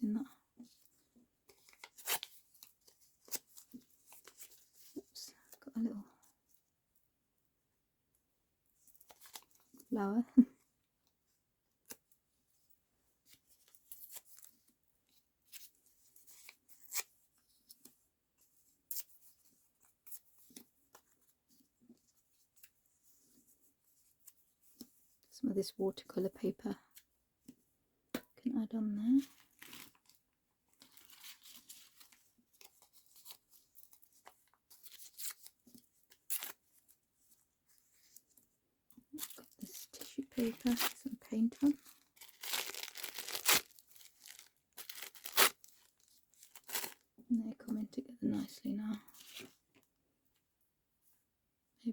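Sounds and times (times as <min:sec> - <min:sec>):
paper rustling and crinkling: 0:29.2 - 0:38.4, 0:39.2 - 0:47.0
paper and fabric rustling: 0:39.2 - 0:47.0.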